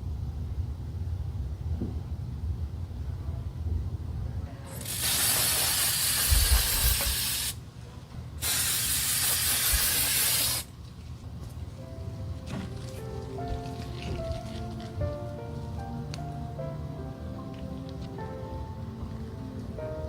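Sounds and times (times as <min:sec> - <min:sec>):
aerosol spray can spraying: 0:04.8 - 0:07.6, 0:08.4 - 0:10.7.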